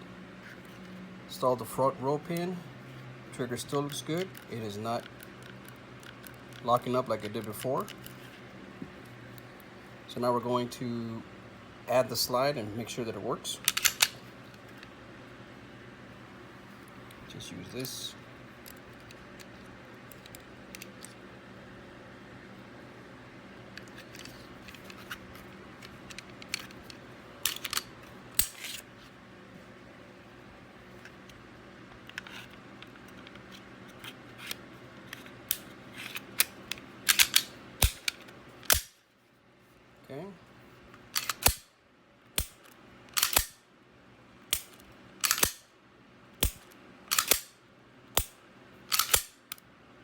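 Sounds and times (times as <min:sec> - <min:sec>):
metallic clicks of pistol handling: 0:13.6 - 0:14.2, 0:25.8 - 0:28.8, 0:35.5 - 0:39.0, 0:41.2 - 0:41.7, 0:42.4 - 0:43.6, 0:44.5 - 0:45.7, 0:46.4 - 0:47.6, 0:48.2 - 0:49.6
pistol slide snapping: 0:13.7 - 0:14.2, 0:27.5 - 0:28.8, 0:37.1 - 0:39.0, 0:41.2 - 0:41.7, 0:42.4 - 0:43.6, 0:44.5 - 0:45.7, 0:46.4 - 0:47.6, 0:48.2 - 0:49.6
pistol trigger dry-fire clicks: 0:43.2 - 0:43.6, 0:46.4 - 0:47.6.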